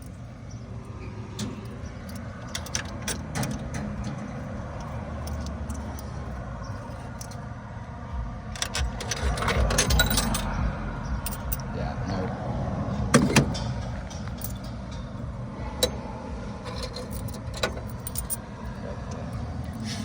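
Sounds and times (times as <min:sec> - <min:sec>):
road traffic rumble: 0:00.0 - 0:20.0
sharp clicks and rattles: 0:01.3 - 0:07.5, 0:08.4 - 0:11.7, 0:13.1 - 0:16.0, 0:16.6 - 0:19.8.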